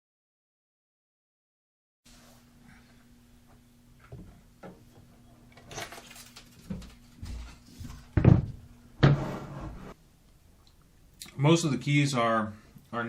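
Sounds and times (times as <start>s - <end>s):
faint steady hum: 2.1s - 13.0s
handling knocks and rustles: 4.0s - 8.7s.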